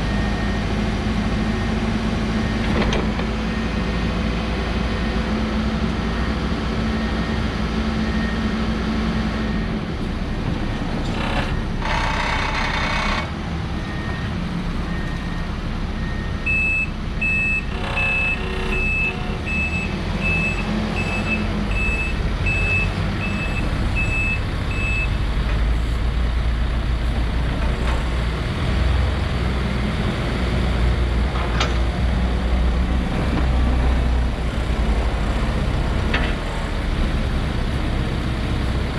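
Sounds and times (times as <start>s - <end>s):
diesel engine running: 0.0s - 38.9s
back-up alarm beeping: 16.0s - 25.2s.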